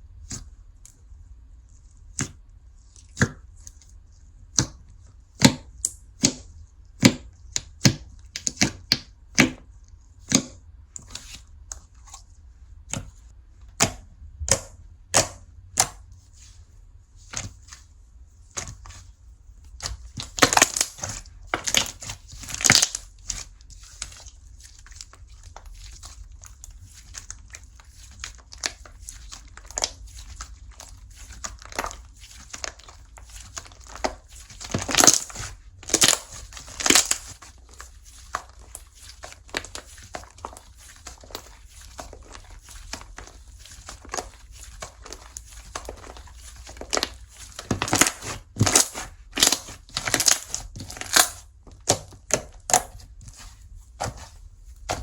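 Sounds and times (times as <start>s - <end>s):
slime clicking and popping: 19.8s - 23.4s, 46.9s - 53.0s.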